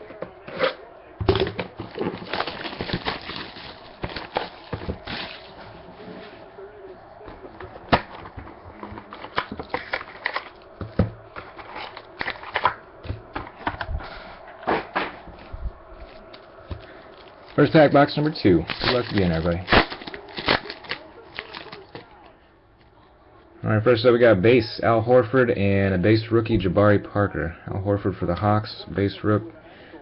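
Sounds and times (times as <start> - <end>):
cards and cardboard being handled: 0.0 - 5.9, 7.2 - 22.2.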